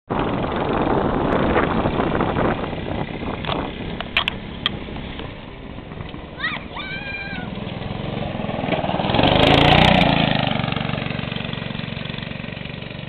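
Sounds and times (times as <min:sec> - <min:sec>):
wind on microphone: 0:00.1 - 0:07.5
dune buggy engine running fast: 0:00.1 - 0:13.0.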